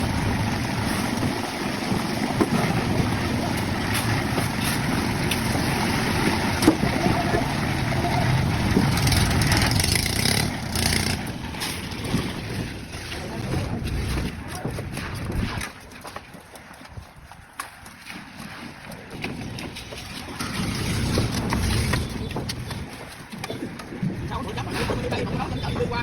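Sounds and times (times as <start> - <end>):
construction machinery engine rumble: 0.0 - 14.1, 20.0 - 22.8.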